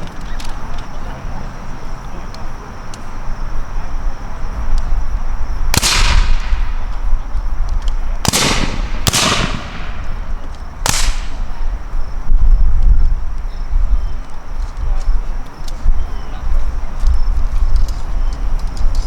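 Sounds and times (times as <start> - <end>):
rifle shots with echo: 5.8 - 7.3, 8.1 - 11.9.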